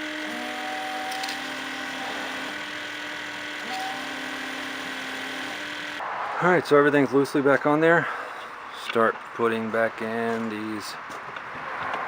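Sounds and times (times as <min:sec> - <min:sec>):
washer pump buzzing whine: 0:00.0 - 0:06.0.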